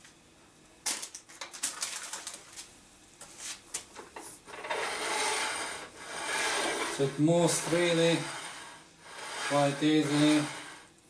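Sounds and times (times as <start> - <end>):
plastic cover crinkling: 0.9 - 2.8
plastic rubbing: 4.6 - 10.9.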